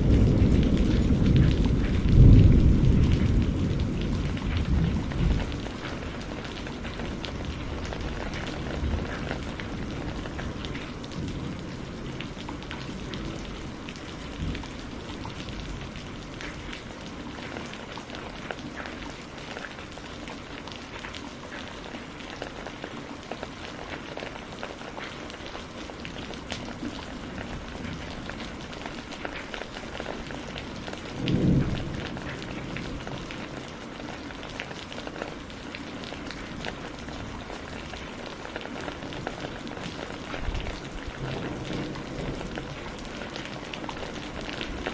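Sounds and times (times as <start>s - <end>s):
loud thunder clap: 0.0s - 5.8s, 31.2s - 33.4s
thunder rumbling: 0.0s - 19.3s, 25.6s - 44.9s
raindrops ticking: 0.0s - 44.9s
steady rain falling: 0.0s - 44.9s.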